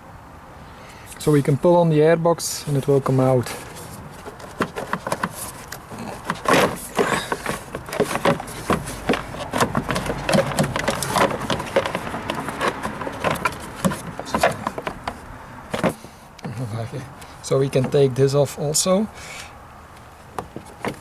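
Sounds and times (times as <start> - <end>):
plastic clicking and scraping: 3.4 - 16.1, 20.3 - 21.0.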